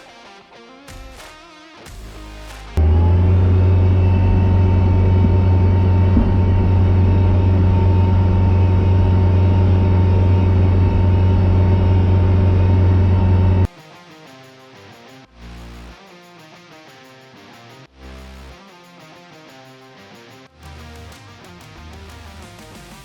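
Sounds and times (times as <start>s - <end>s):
vehicle engine droning: 2.8s - 13.7s.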